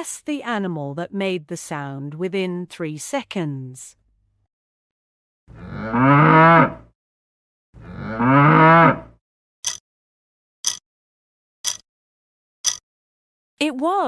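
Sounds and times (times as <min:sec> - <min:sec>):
cow mooing: 0:05.5 - 0:06.9, 0:07.8 - 0:09.2.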